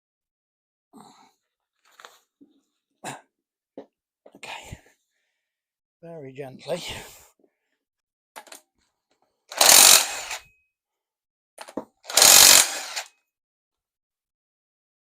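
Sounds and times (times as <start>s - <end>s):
impact wrench hammering: 9.5s - 10.4s, 11.7s - 13.1s.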